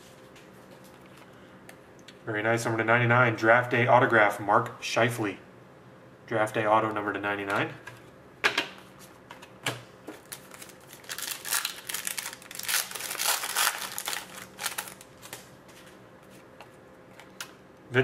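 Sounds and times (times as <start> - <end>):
packaging crinkling: 10.1 - 15.5.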